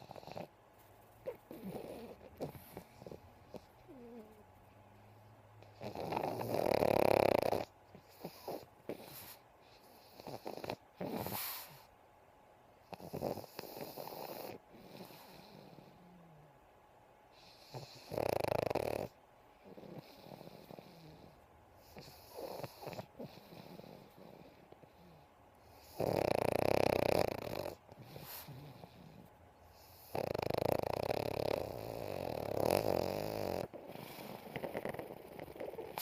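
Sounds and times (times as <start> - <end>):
dog snoring: 0.0 - 0.5, 1.2 - 4.4, 5.6 - 11.9, 12.8 - 16.5, 17.3 - 36.0.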